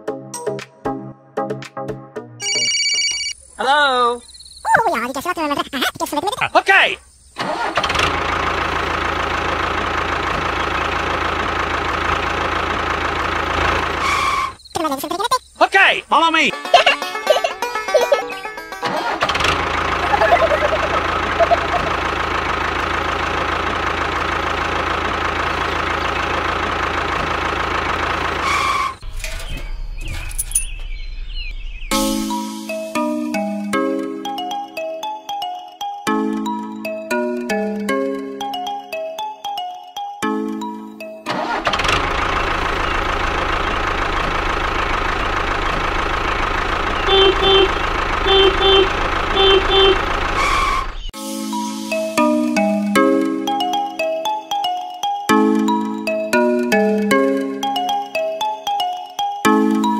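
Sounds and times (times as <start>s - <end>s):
engine-like running sound: 7.4s - 14.6s, 17.2s - 31.7s, 41.3s - 51.2s
horn double honks: 47.0s - 50.9s
chiming mallet music: 51.4s - 59.9s.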